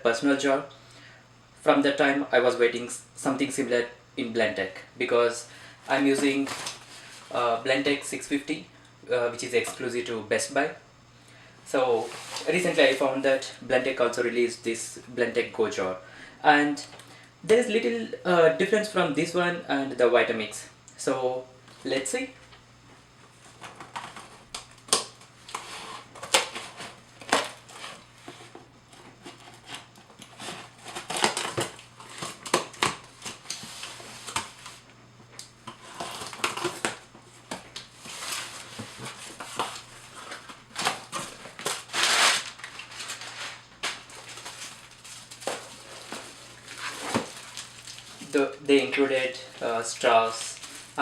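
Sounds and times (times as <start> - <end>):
packaging rustling and crinkling: 5.9 - 7.4, 23.3 - 34.9, 35.6 - 51.0.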